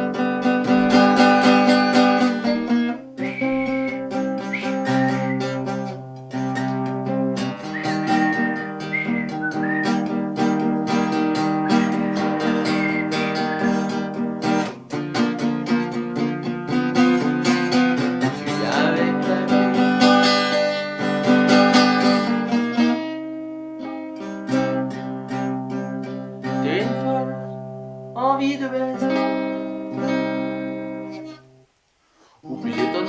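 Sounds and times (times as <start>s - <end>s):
acoustic guitar playing: 0.0s - 33.0s
thin wavering melody: 7.6s - 14.2s.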